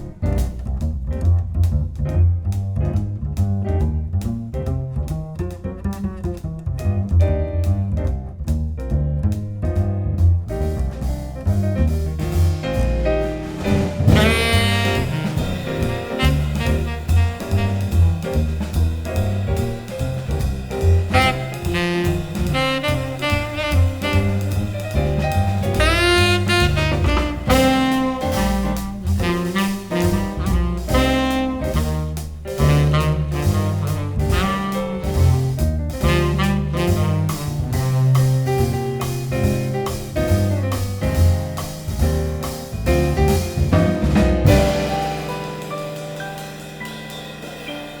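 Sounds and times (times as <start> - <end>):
deep bass line: 0.0 - 48.0
drums: 0.0 - 48.0
saxophone playing lead line: 14.1 - 18.3, 21.1 - 37.5.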